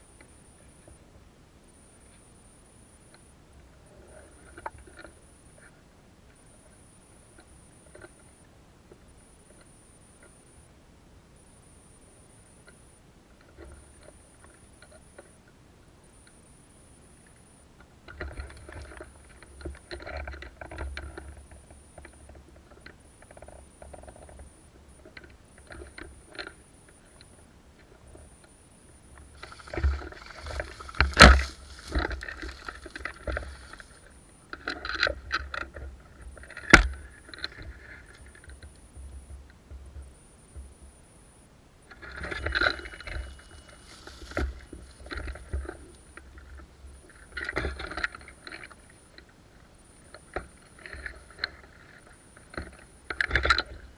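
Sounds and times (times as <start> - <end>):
rustling through undergrowth: 29.0 - 35.7, 41.9 - 47.4.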